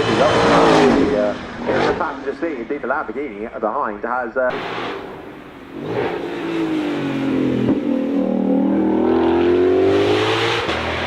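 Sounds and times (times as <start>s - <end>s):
car engine accelerating hard: 0.0s - 2.3s, 4.5s - 11.0s.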